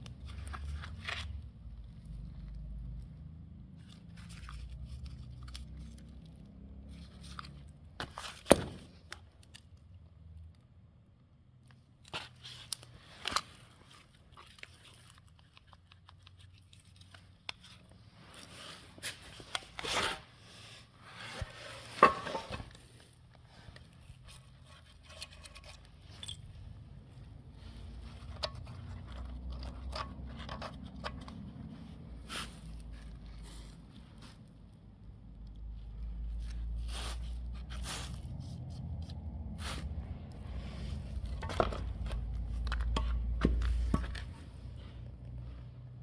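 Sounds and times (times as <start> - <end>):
clicks and scrapes on metal parts: 21.8 - 26.7, 28.0 - 31.7.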